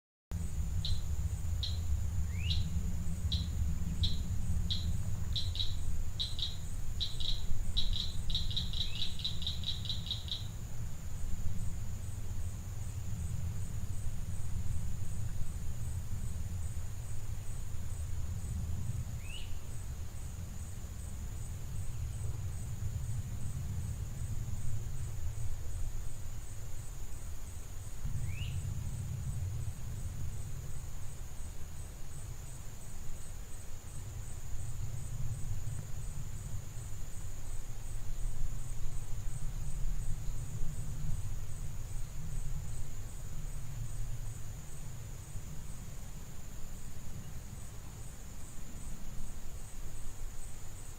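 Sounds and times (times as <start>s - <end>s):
low rumble: 0.3s - 9.6s, 27.9s - 31.0s
high insect trill: 0.3s - 50.9s.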